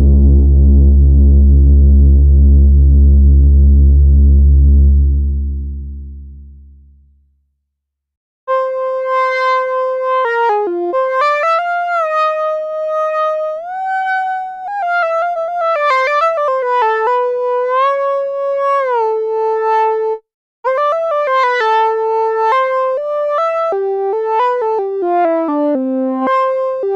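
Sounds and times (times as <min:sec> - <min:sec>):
synthesizer lead melody: 0:00.0 - 0:06.0.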